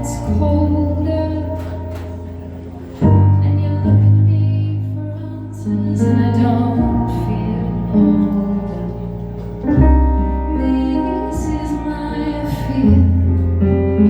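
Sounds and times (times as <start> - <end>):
keyboard chords: 0.0 - 14.0
woman singing: 0.0 - 14.0.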